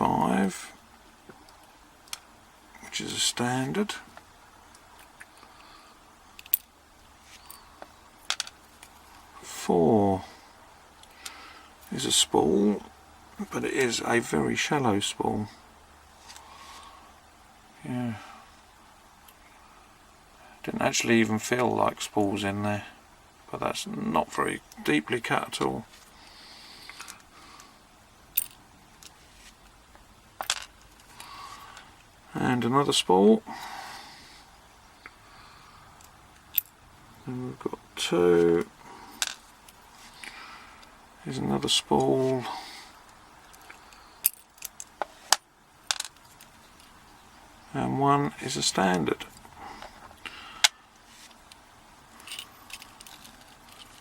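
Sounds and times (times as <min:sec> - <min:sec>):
lock pins clicking: 0:06.4 - 0:06.7, 0:43.5 - 0:45.0.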